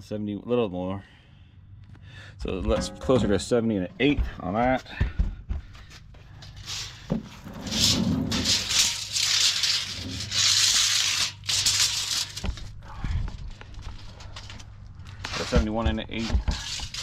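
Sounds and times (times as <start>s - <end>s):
scraping and rubbing: 6.3s - 17.0s.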